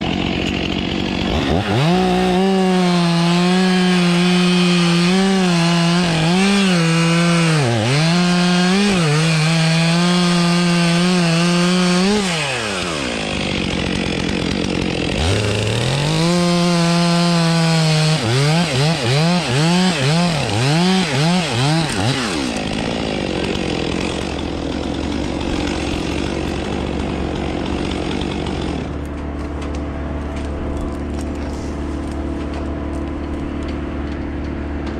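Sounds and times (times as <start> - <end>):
chainsaw revving: 0.0 - 34.9.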